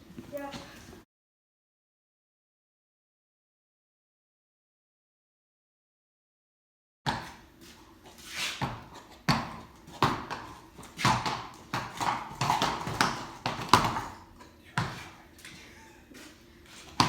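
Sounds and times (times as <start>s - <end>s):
horse hooves on hard ground: 7.1s - 15.6s, 16.2s - 17.0s.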